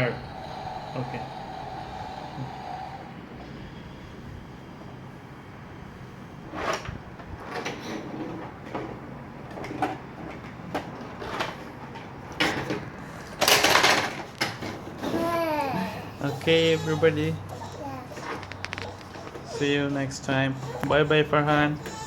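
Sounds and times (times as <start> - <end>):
rattling plastic clatter: 7.5 - 15.2.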